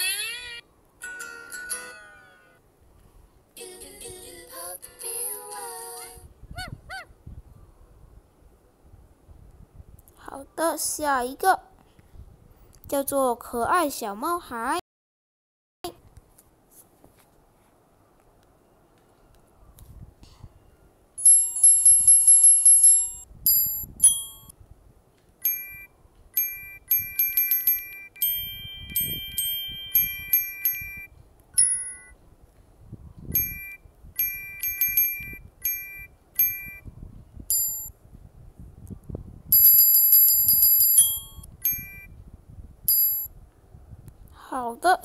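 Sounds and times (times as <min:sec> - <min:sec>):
bright key-press chimes: 0:25.4 - 0:32.1, 0:33.4 - 0:36.9.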